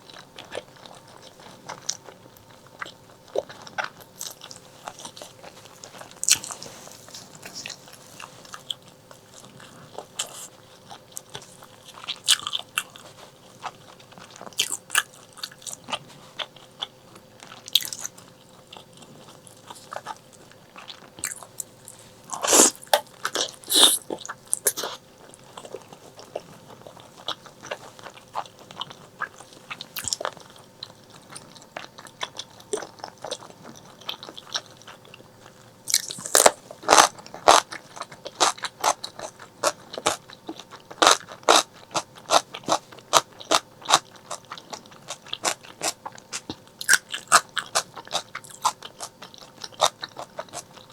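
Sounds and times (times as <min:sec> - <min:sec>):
wet bites and chewing: 0:20.8 - 0:30.4.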